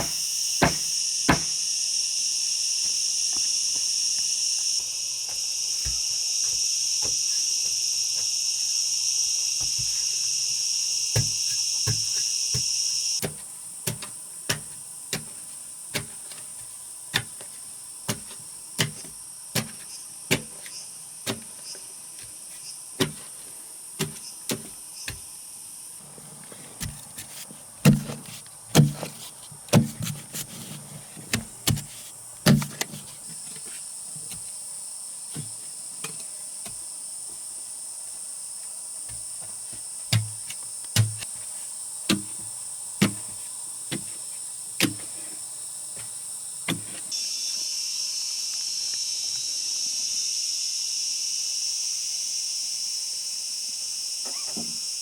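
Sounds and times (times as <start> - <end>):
sharp knocks: 0.0 - 1.6
insects chirring: 0.0 - 55.0.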